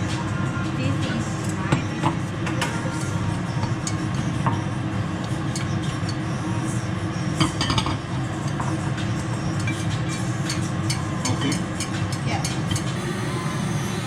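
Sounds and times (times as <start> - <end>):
utensils clinking against dishes: 0.9 - 13.0
steady low hum: 13.0 - 14.0.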